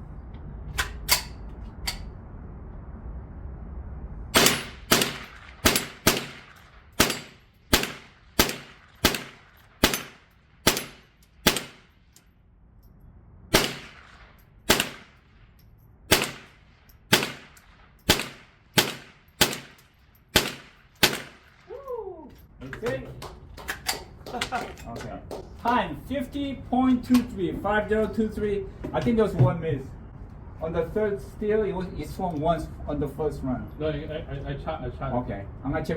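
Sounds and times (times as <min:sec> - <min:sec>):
rifle shots hitting steel targets: 0:04.4 - 0:12.2, 0:13.5 - 0:21.7.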